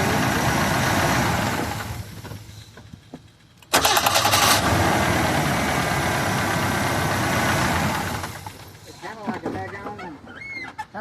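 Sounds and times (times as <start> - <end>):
engine shutting off: 0.0 - 9.0
engine running steadily: 0.0 - 9.6
starter cranking with ticking clatter: 1.8 - 4.7.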